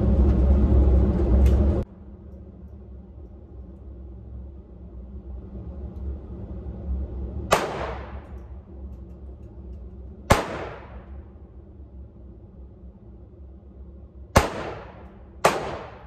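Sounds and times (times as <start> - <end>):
steady low rumble: 0.0 - 16.0
gunshots with echo: 7.5 - 8.2, 10.3 - 11.1, 14.4 - 16.0.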